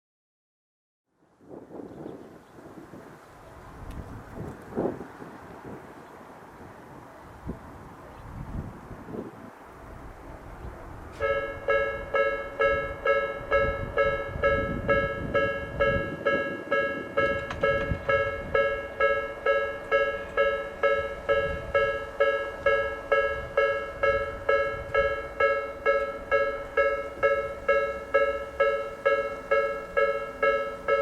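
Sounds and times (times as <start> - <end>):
level crossing warning bell: 9.4 - 31.0.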